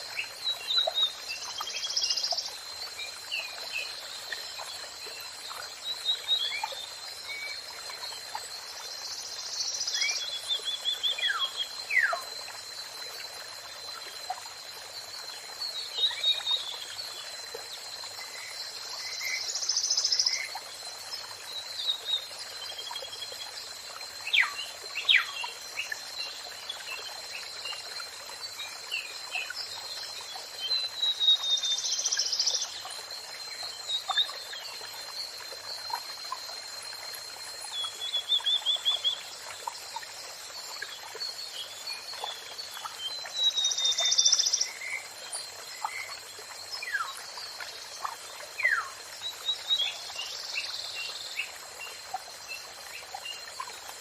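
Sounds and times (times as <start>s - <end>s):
songbirds calling and singing: 0.0s - 12.3s, 15.2s - 36.6s, 37.6s - 54.0s.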